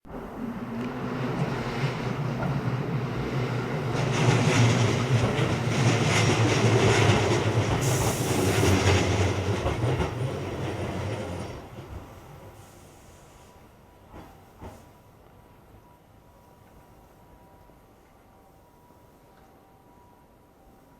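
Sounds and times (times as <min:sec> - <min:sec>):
train wheels clattering: 0:01.6 - 0:12.2.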